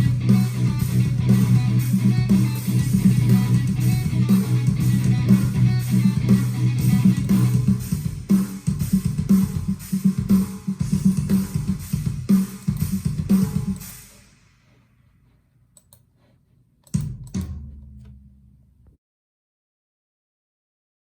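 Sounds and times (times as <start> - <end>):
metal guitar riff: 0.0 - 14.0
drum kit: 0.0 - 14.8, 16.8 - 18.5.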